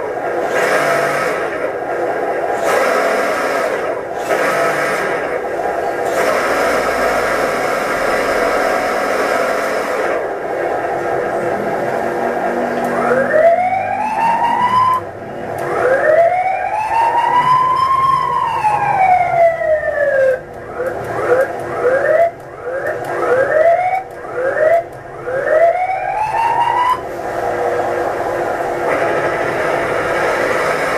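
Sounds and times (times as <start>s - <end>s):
siren wailing and whooping: 12.2s - 27.1s.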